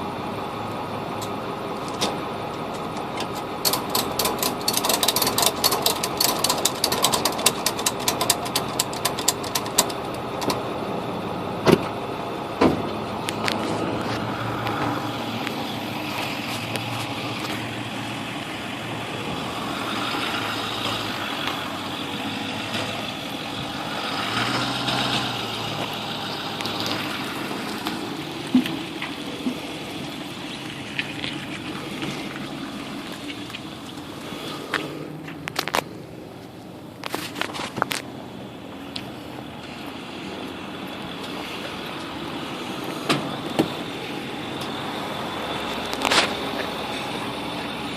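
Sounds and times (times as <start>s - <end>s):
truck engine running: 0.0s - 47.9s
fast clicks: 3.0s - 10.6s.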